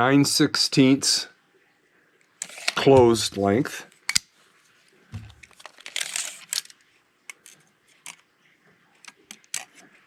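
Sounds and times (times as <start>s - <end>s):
knife blade scraping: 2.4s - 3.0s.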